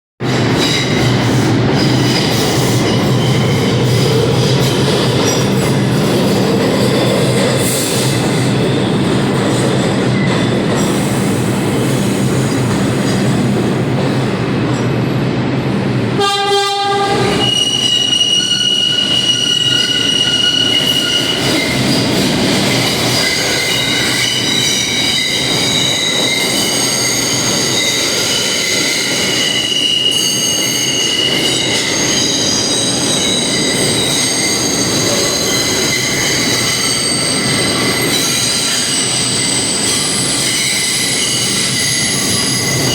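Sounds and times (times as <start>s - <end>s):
subway train rumbling: 0.2s - 42.9s
train horn blast: 16.2s - 17.8s
wheel squeal: 17.4s - 42.9s.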